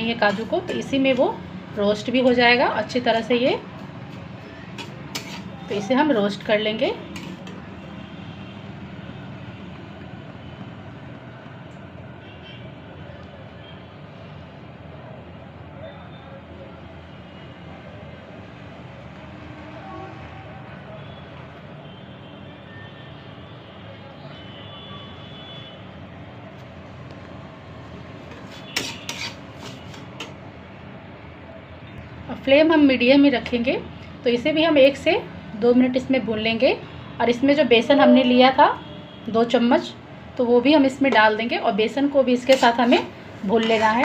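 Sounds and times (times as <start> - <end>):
spoon scraping a pan: 0.0 - 1.4, 4.1 - 5.9, 7.0 - 7.7, 28.2 - 30.4, 42.4 - 44.0.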